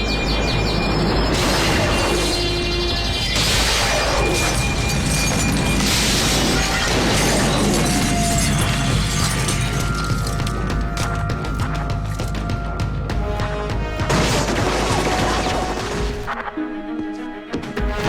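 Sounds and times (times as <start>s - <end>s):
background score music: 0.0s - 18.0s
loud crashes and smashing hits: 1.2s - 12.8s, 13.9s - 16.3s.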